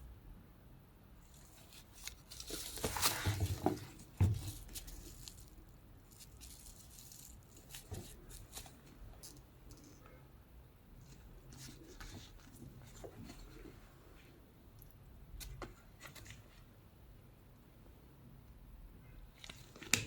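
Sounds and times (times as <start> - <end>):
rustling packaging: 1.2 - 10.0
light clicks and handling noises: 1.3 - 10.2.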